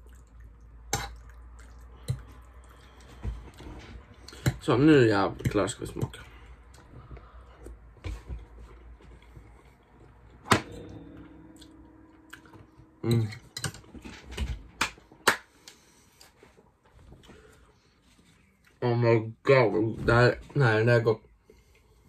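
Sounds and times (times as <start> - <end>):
person chewing food: 0.0 - 3.6.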